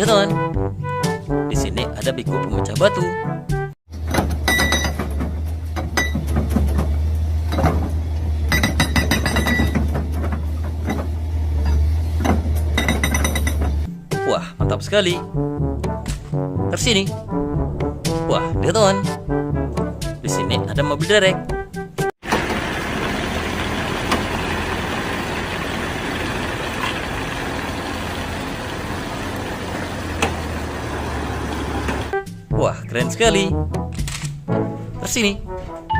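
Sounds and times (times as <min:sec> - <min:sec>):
truck engine idling: 0:22.2 - 0:32.2.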